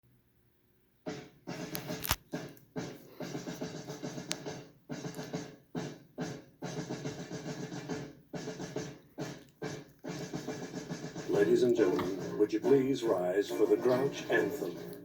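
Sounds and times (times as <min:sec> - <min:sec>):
choppy stop-start music: 0:01.1 - 0:15.0.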